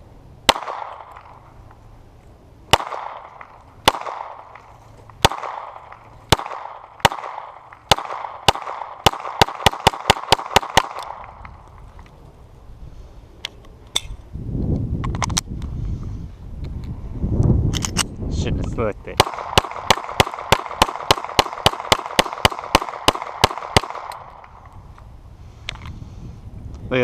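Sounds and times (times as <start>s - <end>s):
pistol shots echoing: 0.5s - 1.4s, 2.7s - 11.4s, 19.1s - 24.6s.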